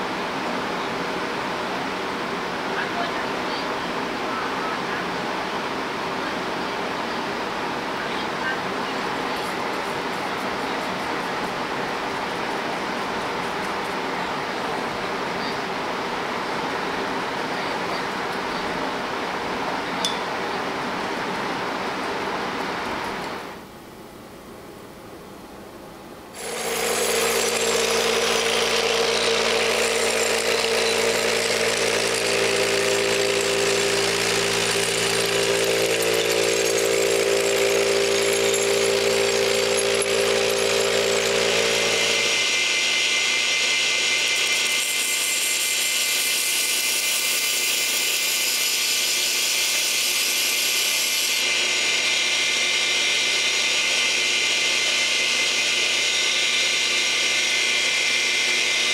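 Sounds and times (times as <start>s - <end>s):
power tool motor whine: 26.4s - 58.9s.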